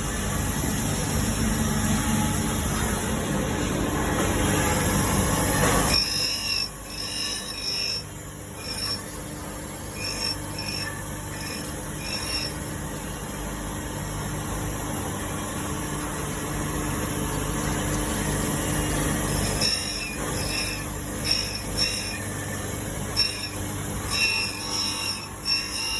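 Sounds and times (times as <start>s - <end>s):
grinder motor hum: 0.0s - 25.9s
grinding wheel rasping on blade: 5.5s - 13.3s, 18.1s - 25.9s.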